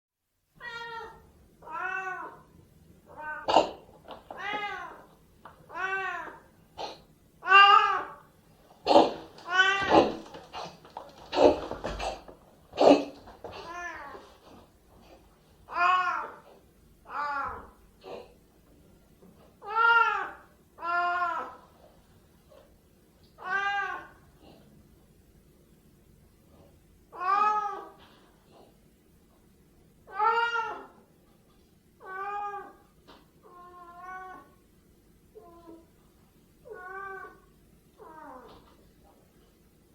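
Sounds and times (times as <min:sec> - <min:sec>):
cat meowing: 0:00.6 - 0:02.4, 0:03.1 - 0:03.6, 0:04.3 - 0:05.1, 0:05.7 - 0:06.5, 0:07.4 - 0:08.3, 0:09.4 - 0:10.2, 0:15.7 - 0:16.4, 0:17.1 - 0:17.8, 0:19.6 - 0:21.6, 0:23.4 - 0:24.2, 0:27.1 - 0:28.0, 0:30.1 - 0:31.0, 0:32.0 - 0:32.8, 0:33.4 - 0:34.6, 0:36.6 - 0:38.6
cat coughing: 0:03.4 - 0:03.9, 0:08.8 - 0:13.2.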